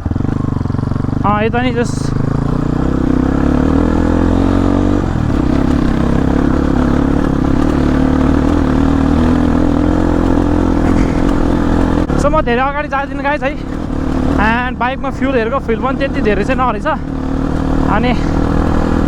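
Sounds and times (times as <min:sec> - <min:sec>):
motorcycle engine running: 0:00.0 - 0:19.0.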